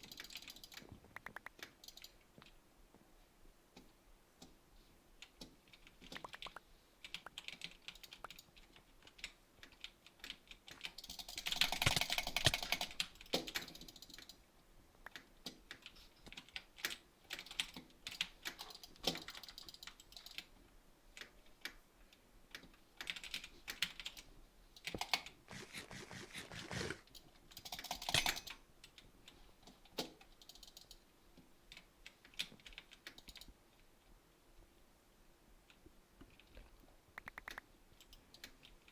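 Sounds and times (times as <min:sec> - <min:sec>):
quick sharp clicks and taps: 0:05.4 - 0:08.4, 0:24.9 - 0:27.0, 0:37.2 - 0:37.6.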